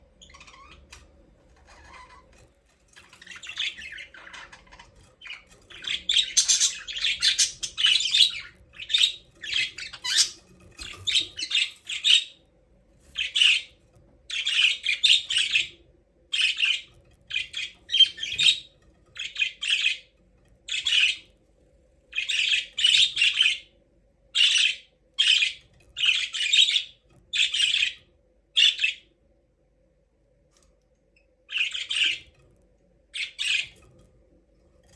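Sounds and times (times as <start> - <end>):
budgerigars chirping: 3.1 - 12.4, 13.2 - 13.7, 14.3 - 15.7, 16.4 - 20.1, 20.7 - 21.3, 22.2 - 23.7, 24.4 - 28.0, 28.6 - 29.0, 31.5 - 32.3, 33.2 - 33.8.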